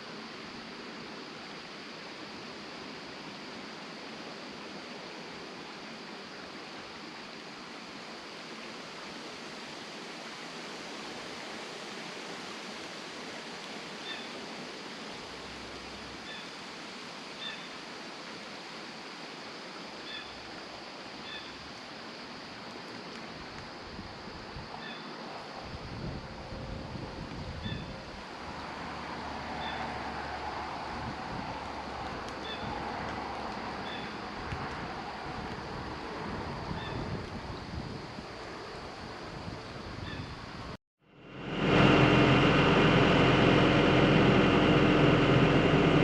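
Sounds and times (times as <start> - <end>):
creek rushing: 28.1 - 36.6, 41.1 - 46.0.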